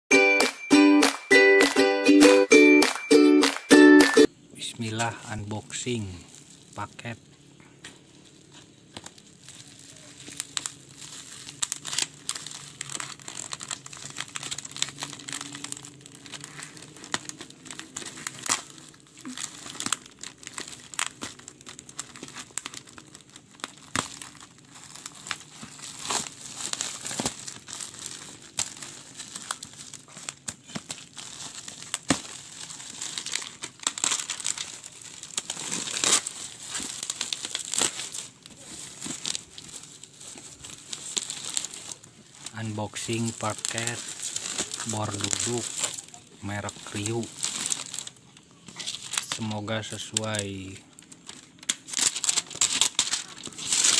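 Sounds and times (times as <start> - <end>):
packaging crinkling and tearing: 4.8 - 53.9.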